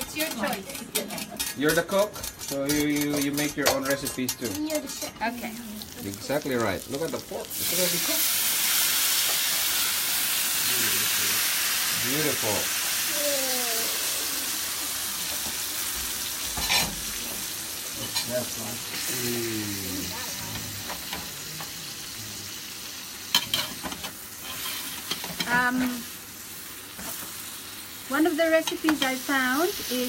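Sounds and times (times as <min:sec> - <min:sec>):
utensil clicking against pan: 0:00.0 - 0:05.2
meat sizzling in a skillet: 0:00.0 - 0:30.0.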